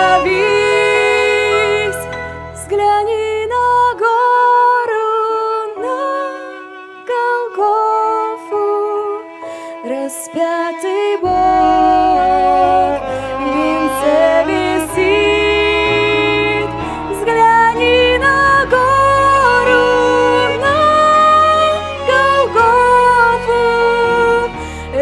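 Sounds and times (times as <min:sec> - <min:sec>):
steady bass accompaniment: 0:00.0 - 0:04.0, 0:11.2 - 0:25.0
slow gliding melody: 0:00.0 - 0:25.0.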